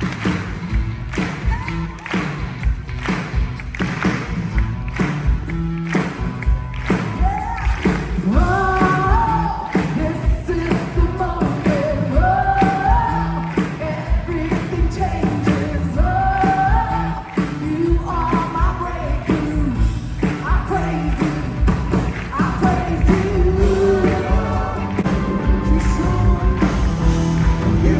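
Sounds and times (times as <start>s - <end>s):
bass: 0.0s - 27.9s
drum beat: 0.0s - 27.9s
person singing: 7.2s - 21.4s, 22.3s - 27.9s.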